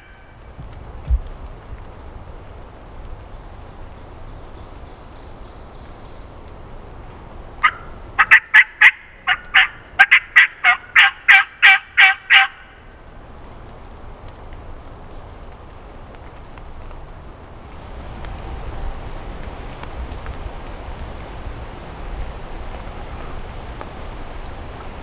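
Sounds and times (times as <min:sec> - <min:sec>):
rain hiss: 0:00.0 - 0:25.0
turkey yelps: 0:07.6 - 0:12.7.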